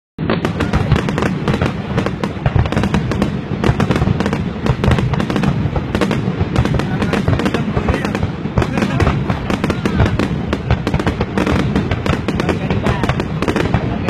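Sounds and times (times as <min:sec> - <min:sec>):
fireworks bangs and crackles: 0:00.2 - 0:14.0.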